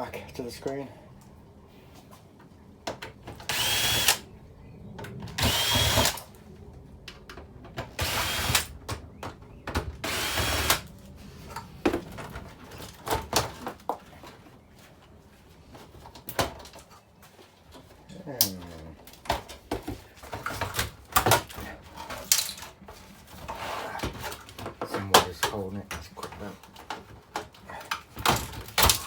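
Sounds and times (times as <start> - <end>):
power drill whining: 3.4 - 4.2, 5.4 - 6.2, 8.0 - 8.7, 10.0 - 10.8.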